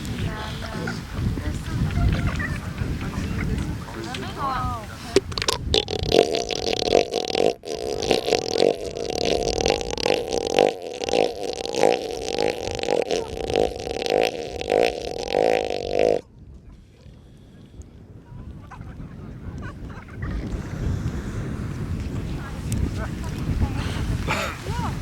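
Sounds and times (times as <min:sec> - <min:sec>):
elephant seal deep guttural call: 0:05.6 - 0:16.2.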